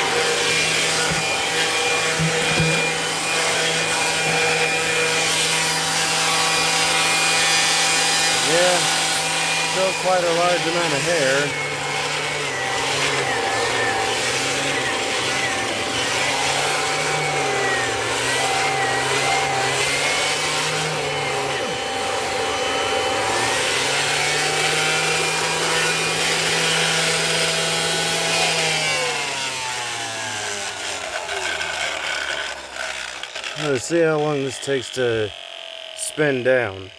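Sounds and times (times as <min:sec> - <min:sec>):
upright vacuum cleaner running: 0:00.0 - 0:34.6
vacuum motor winding down: 0:00.0 - 0:34.6.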